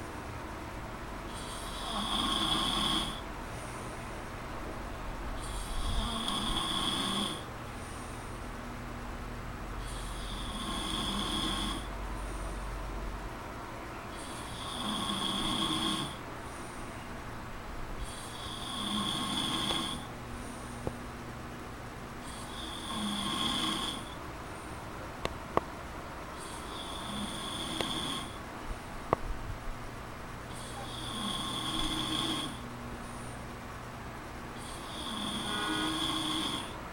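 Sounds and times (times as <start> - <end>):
quiet breathing: 1.2 - 4.4, 5.3 - 8.9, 9.7 - 13.1, 14.1 - 17.2, 18.0 - 21.2, 22.1 - 25.0, 26.2 - 29.1, 30.4 - 33.7, 34.4 - 36.9
man snoring: 1.3 - 3.3, 5.4 - 7.5, 9.8 - 11.9, 14.2 - 16.2, 18.0 - 20.1, 22.2 - 24.2, 26.4 - 28.4, 30.5 - 32.6, 34.6 - 36.8.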